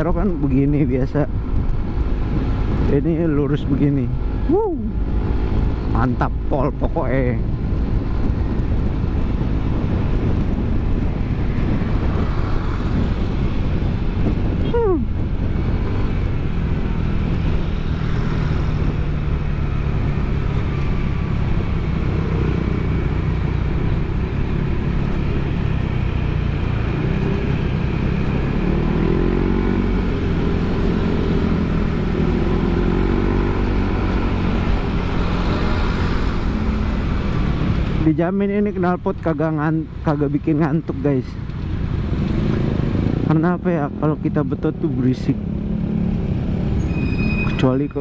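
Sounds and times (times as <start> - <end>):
scooter engine drone: 1.3 - 38.1.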